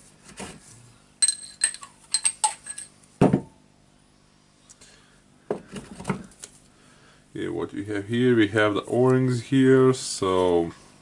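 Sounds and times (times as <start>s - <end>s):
metal parts clinking: 1.2s - 2.9s.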